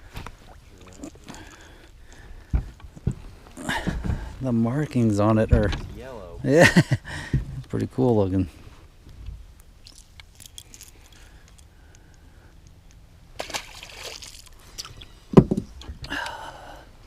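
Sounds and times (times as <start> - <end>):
light clicks and rattles: 9.1 - 13.0
water splash: 13.4 - 14.6.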